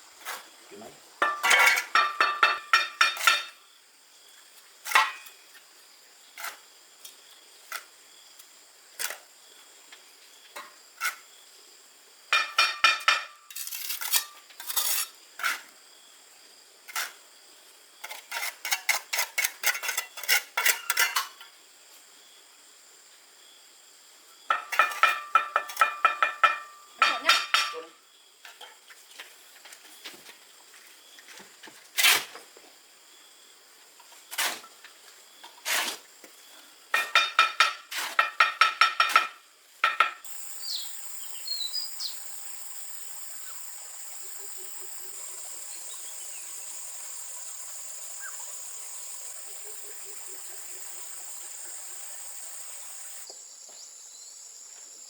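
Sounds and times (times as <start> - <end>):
metal scraping a metal pan: 1.2 - 3.6, 12.4 - 15.6, 18.1 - 21.4, 24.5 - 27.8.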